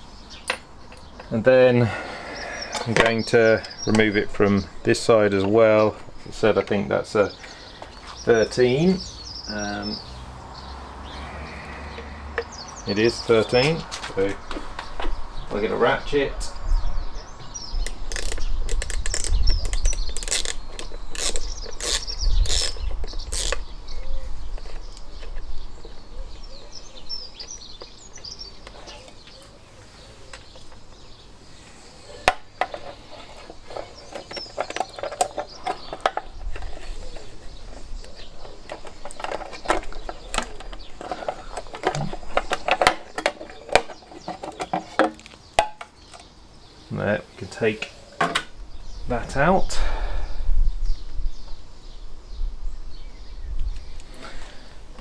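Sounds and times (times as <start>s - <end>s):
birds chirping: 0.0s - 55.0s
socket ratchet clicking: 17.8s - 23.7s.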